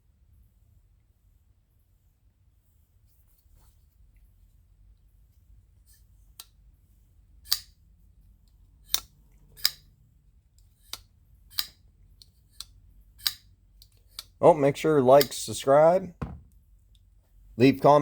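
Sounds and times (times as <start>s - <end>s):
folding knife blade clicking: 7.5s - 7.7s, 8.9s - 9.9s, 10.9s - 14.3s.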